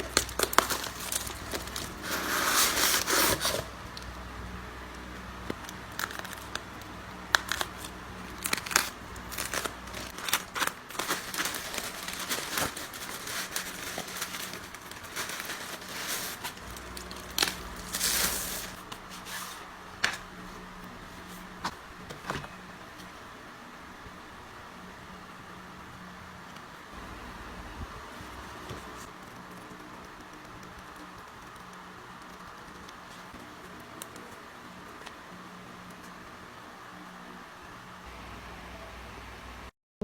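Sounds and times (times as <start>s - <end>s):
packaging crinkling and rustling: 0.0s - 4.1s, 5.4s - 23.2s
faint steady hum: 0.0s - 39.7s.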